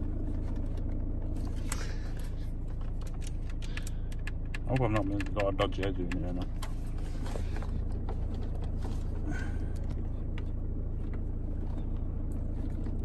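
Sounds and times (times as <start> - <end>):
car engine idling: 0.0 - 13.0
light clicks and knocks: 2.7 - 8.8.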